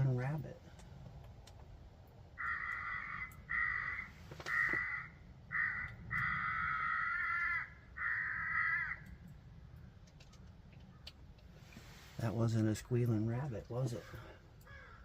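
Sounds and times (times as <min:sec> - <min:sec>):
recorded animal call from speaker: 0:13.3 - 0:14.4.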